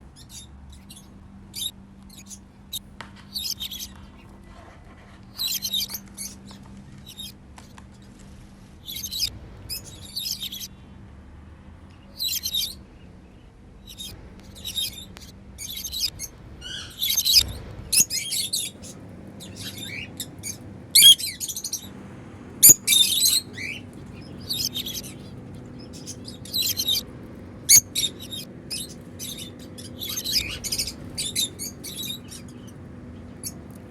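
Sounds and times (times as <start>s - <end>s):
birds chirping rapidly: 13.9s - 33.9s.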